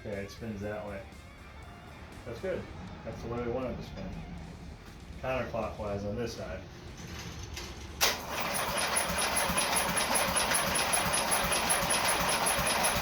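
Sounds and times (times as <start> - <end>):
engine cranking without firing: 6.8 - 13.0.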